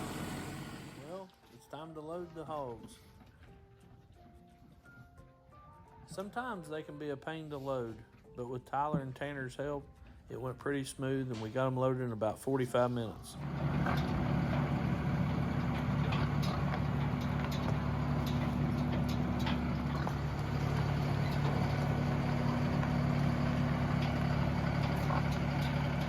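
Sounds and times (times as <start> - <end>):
vehicle engine idling: 0.0 - 1.1, 13.4 - 26.0.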